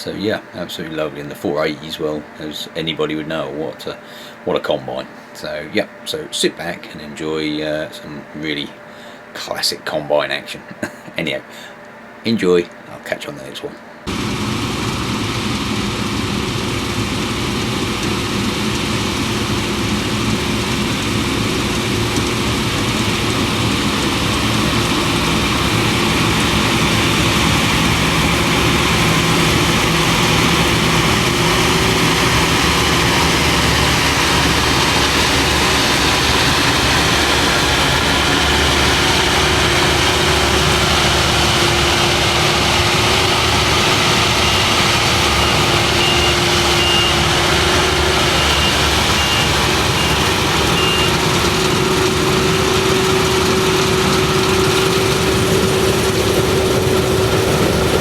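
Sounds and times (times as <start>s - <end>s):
combine harvester engine drone: 14.0s - 58.0s
high beeps: 44.1s - 51.2s.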